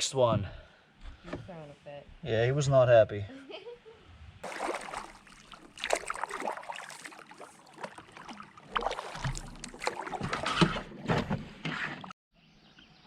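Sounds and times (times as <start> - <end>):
paddle splashes: 4.4 - 12.1.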